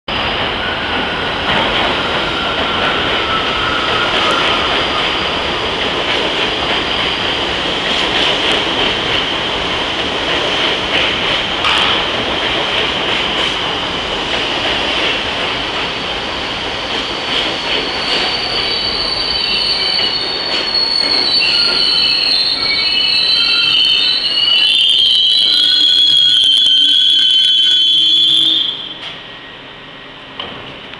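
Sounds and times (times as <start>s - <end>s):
train wheels squealing on rails: 0.2s - 9.3s, 13.5s - 30.9s.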